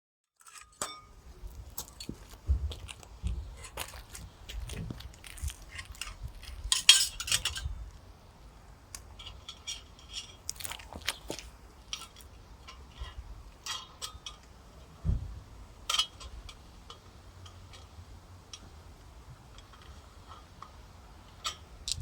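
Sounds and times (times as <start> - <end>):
metal cookware clinking: 0.4 - 1.1
wind rumble on microphone: 1.2 - 8.1, 15.0 - 16.6, 21.8 - 22.0.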